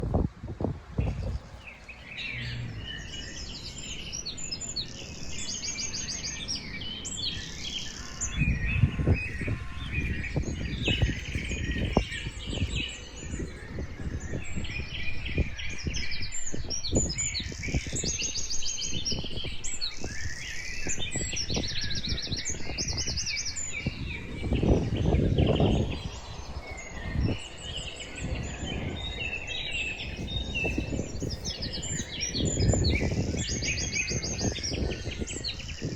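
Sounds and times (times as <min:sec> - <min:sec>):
songbirds chirping and trilling: 0:00.0 - 0:35.9
low rumble: 0:00.7 - 0:05.2.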